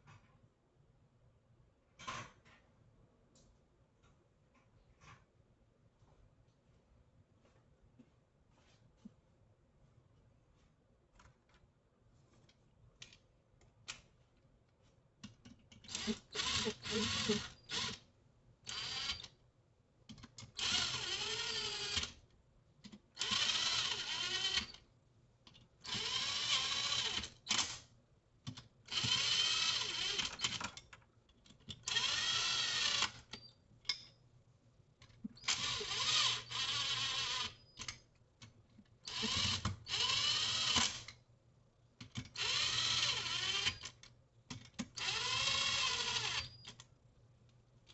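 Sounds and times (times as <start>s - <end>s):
cordless drill driving bolts: 15.9s - 18.0s, 18.7s - 19.3s, 20.6s - 22.2s, 23.2s - 24.8s, 25.8s - 27.8s, 28.9s - 30.6s, 31.8s - 33.4s, 35.4s - 37.6s, 39.1s - 41.1s, 42.3s - 44.0s, 44.9s - 46.7s.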